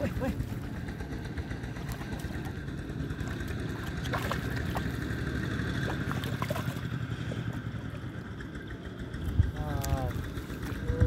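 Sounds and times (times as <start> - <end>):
low engine hum: 0.0 - 11.0
small water splashes: 1.5 - 8.1, 9.8 - 11.0.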